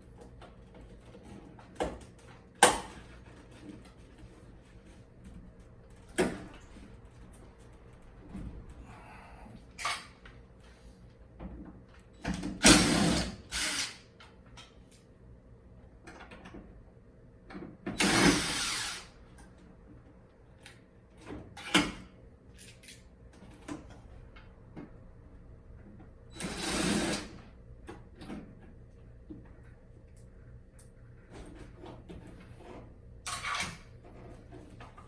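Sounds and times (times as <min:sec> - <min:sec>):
cordless drill bursts: 0:12.6 - 0:14.0, 0:18.0 - 0:19.1, 0:26.4 - 0:27.3.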